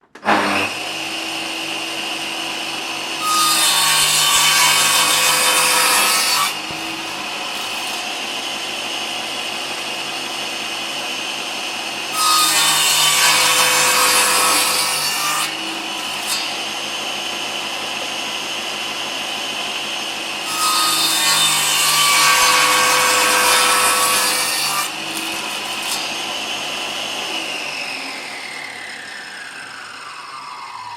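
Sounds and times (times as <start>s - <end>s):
power tool motor whine: 25.0s - 30.9s.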